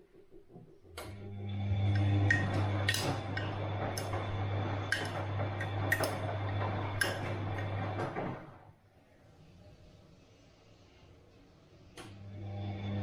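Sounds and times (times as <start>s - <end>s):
washing machine drum churning: 0.0s - 8.7s.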